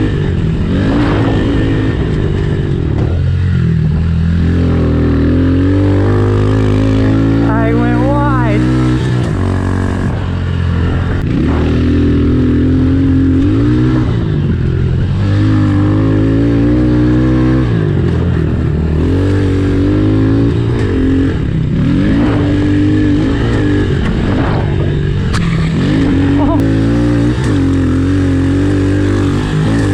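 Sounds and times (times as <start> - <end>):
motorbike engine revving: 0.0 - 29.9.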